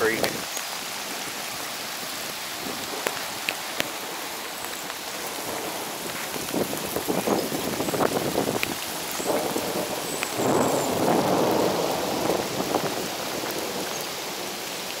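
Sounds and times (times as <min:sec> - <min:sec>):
rain hissing: 0:00.0 - 0:15.0
rushing floodwater in creek: 0:00.0 - 0:15.0.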